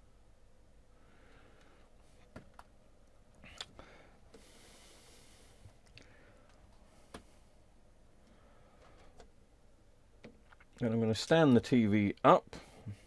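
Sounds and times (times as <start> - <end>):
soft breath hiss: 0.0 - 13.0
faint clicks of handling things: 8.2 - 9.4.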